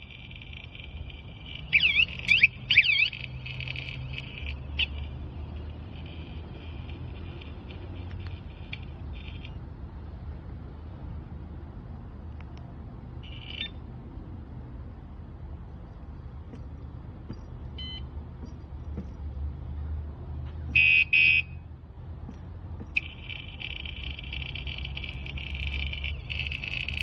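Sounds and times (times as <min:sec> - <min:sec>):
motorcycle alarm beeps: 0:00.0 - 0:04.9, 0:13.2 - 0:13.8, 0:17.3 - 0:18.6, 0:20.8 - 0:21.6
steady low hum: 0:00.0 - 0:20.8.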